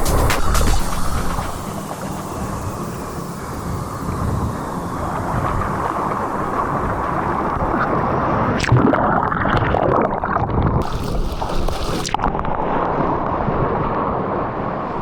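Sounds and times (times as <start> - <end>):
hissing burst of spray: 0.0 - 6.3
surf: 0.0 - 15.0.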